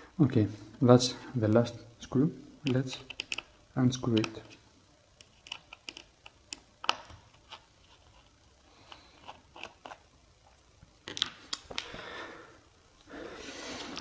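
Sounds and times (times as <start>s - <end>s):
screwdriver clicking and scraping: 2.6s - 4.6s, 5.2s - 10.1s.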